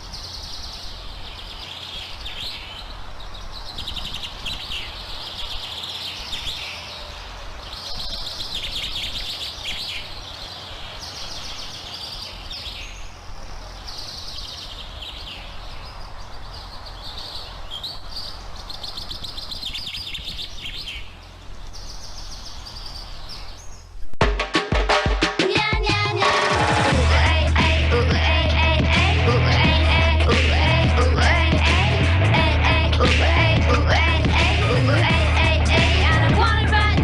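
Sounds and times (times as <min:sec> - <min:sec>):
birds chirping trills: 0:00.0 - 0:24.2
low hum: 0:26.9 - 0:37.0.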